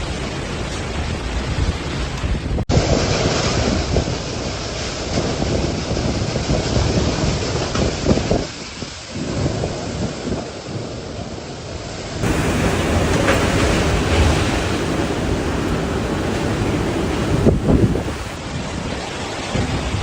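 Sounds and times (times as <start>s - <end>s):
wind buffeting microphone: 12.2s - 18.4s.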